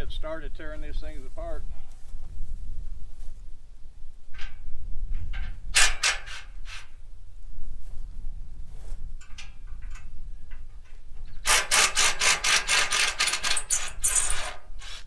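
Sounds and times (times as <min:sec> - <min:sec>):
wind rumbling on microphone: 0:00.0 - 0:11.5
tool rasping on metal: 0:06.0 - 0:06.9, 0:11.4 - 0:15.0.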